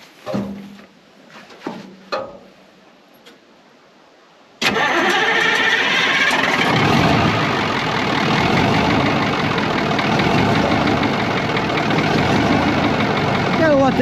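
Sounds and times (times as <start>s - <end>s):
diesel truck engine running: 4.6s - 14.0s.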